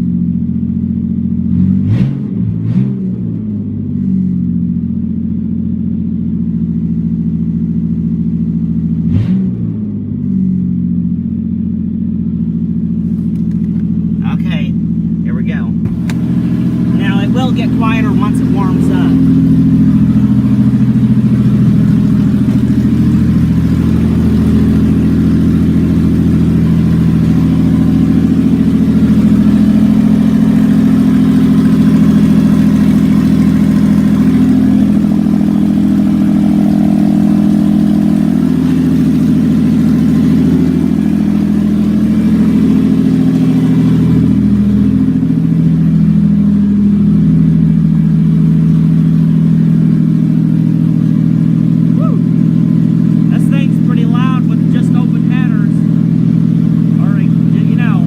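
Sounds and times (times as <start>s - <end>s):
car engine idling loud: 0.0s - 58.0s.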